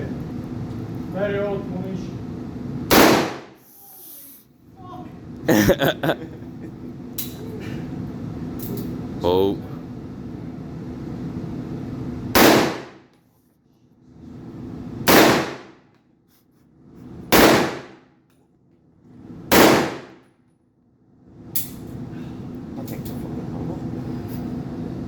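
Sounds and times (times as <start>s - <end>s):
gunshots with ringing: 2.9s - 3.5s, 12.4s - 13.0s, 15.1s - 15.7s, 17.4s - 17.9s, 19.5s - 20.2s.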